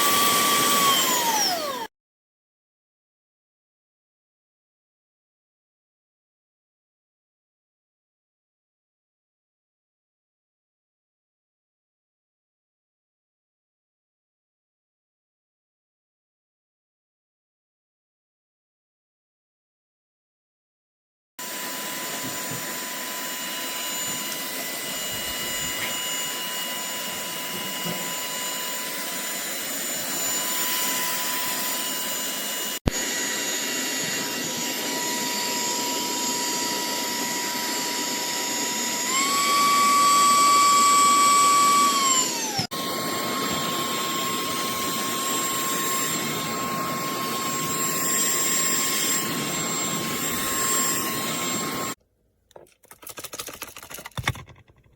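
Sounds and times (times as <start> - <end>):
handheld vacuum motor whine: 0.0 - 1.9, 21.4 - 52.0.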